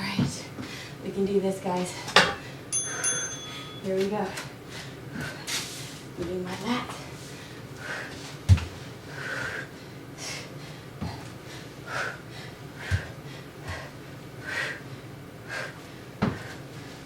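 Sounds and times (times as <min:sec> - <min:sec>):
woman breathing hard: 0:07.2 - 0:08.2, 0:09.0 - 0:17.0.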